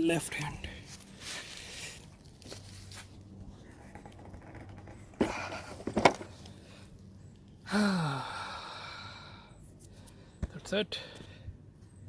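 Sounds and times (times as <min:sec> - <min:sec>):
car battery knocking and scraping: 0:03.8 - 0:06.4
person grunting with effort: 0:07.7 - 0:08.6.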